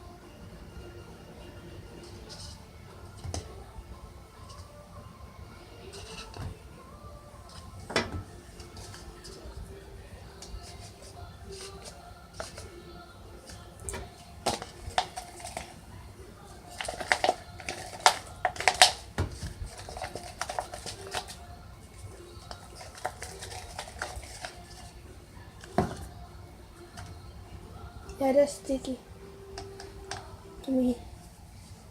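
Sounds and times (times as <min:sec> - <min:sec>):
utensil scraping plastic bowl: 0:05.8 - 0:06.5, 0:22.4 - 0:24.9.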